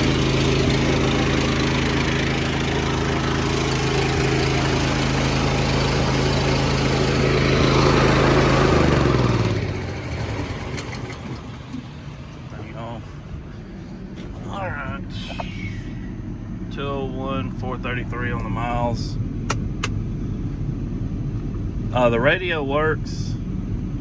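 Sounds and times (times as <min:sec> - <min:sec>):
engine running and winding down: 0:00.0 - 0:12.5.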